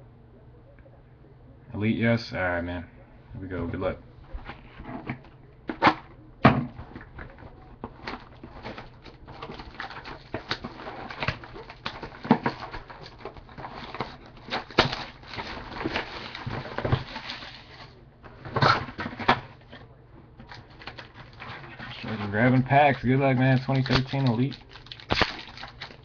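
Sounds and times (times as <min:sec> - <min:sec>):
plastic wrap crinkling: 0:06.8 - 0:19.7, 0:20.4 - 0:26.0
wrapping snapping: 0:07.0 - 0:19.2, 0:20.4 - 0:26.0.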